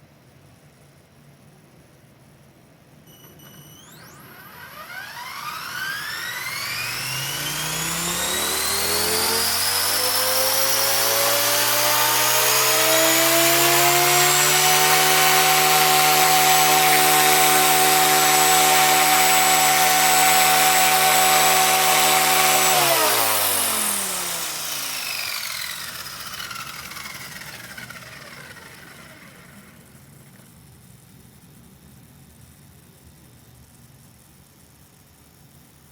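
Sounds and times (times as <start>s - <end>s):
electric helicopter motor whine: 3.1s - 30.5s.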